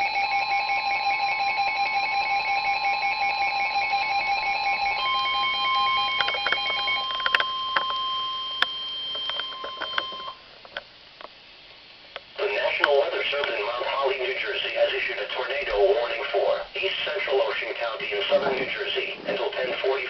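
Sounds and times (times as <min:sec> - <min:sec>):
fast pulsing ringing alarm: 0:00.0 - 0:10.4
steady warning alarm tone: 0:00.0 - 0:10.4
clicks and crackles: 0:06.2 - 0:08.0.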